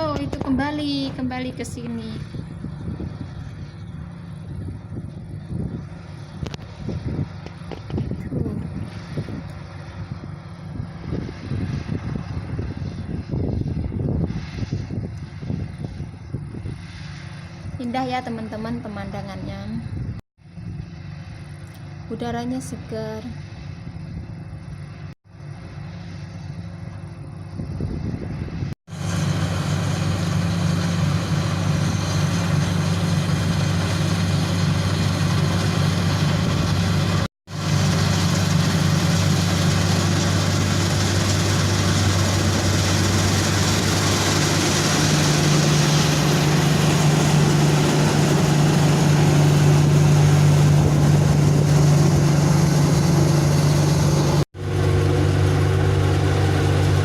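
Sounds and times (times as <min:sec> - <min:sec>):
combine harvester engine drone: 0:00.0 - 0:57.0
broad rushing noise: 0:28.4 - 0:57.0.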